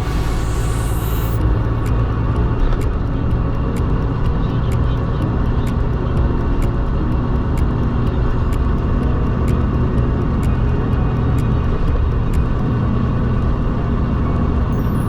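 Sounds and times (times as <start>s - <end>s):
faint ticking: 0.0s - 15.0s
truck engine and road rumble: 0.0s - 15.0s.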